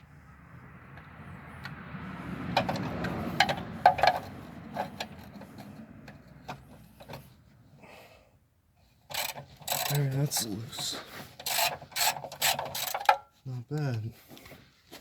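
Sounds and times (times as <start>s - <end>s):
socket wrench ratcheting: 9.1s - 10.5s, 11.4s - 13.2s
sharp metallic clicks: 9.1s - 10.6s.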